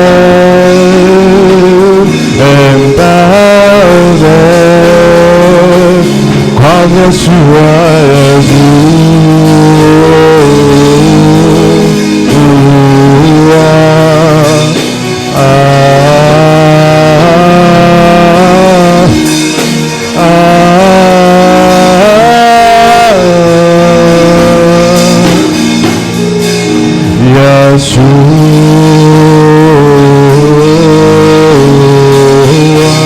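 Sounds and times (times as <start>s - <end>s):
held chords: 0.0s - 33.0s
voice holding long notes: 0.0s - 33.0s.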